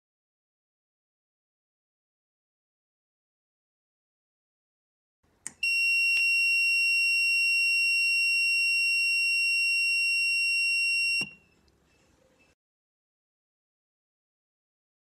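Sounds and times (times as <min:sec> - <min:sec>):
high-pitched buzzer beep: 0:05.6 - 0:11.4
buzzer click: 0:10.4 - 0:11.4.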